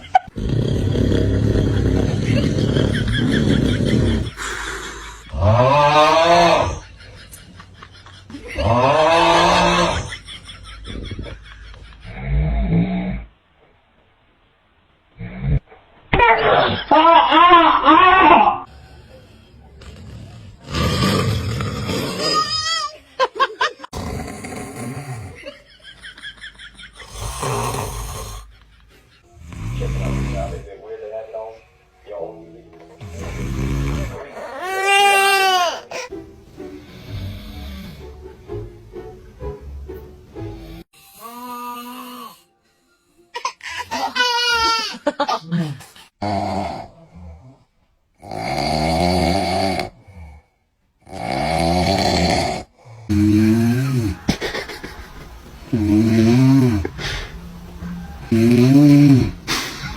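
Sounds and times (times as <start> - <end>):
man snoring loudly: 0.0 - 6.9, 8.6 - 10.1, 18.6 - 22.5, 23.9 - 25.6, 27.0 - 28.5, 29.4 - 30.7, 33.0 - 35.7, 46.2 - 54.4, 55.7 - 59.9.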